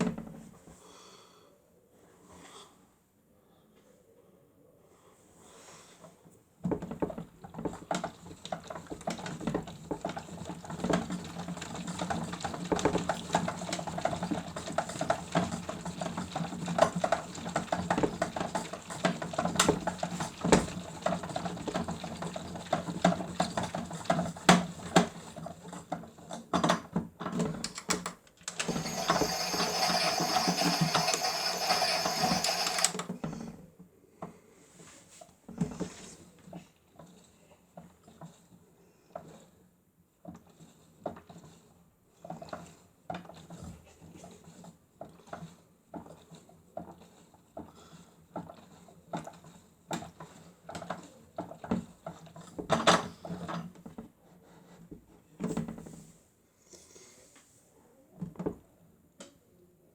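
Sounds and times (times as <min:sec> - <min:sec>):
toy washing machine motor humming: 0:08.1 - 0:25.2, 0:28.5 - 0:33.2
clicks and rattles: 0:26.6 - 0:33.2
hissing whirr: 0:28.5 - 0:33.1.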